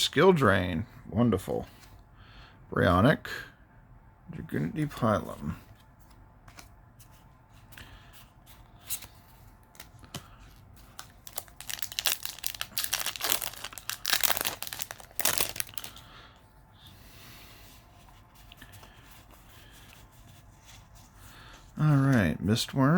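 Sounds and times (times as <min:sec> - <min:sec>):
foil wrapper tearing and crinkling: 0:11.0 - 0:16.0.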